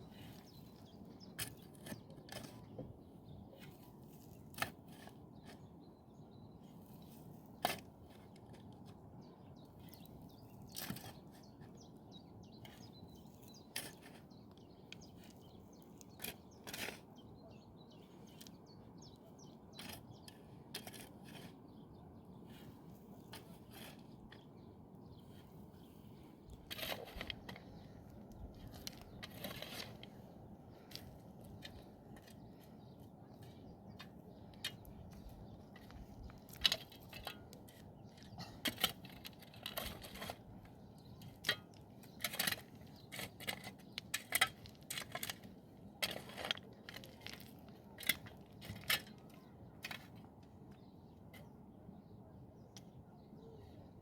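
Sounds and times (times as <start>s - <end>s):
sharp clicks and crunches: 33.4s - 50.2s.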